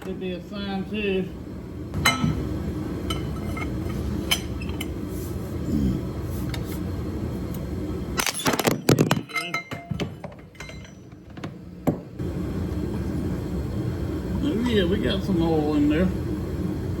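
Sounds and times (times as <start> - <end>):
hand tools clinking on metal: 8.2 - 11.2
loud clanks and rattles: 8.2 - 12.0.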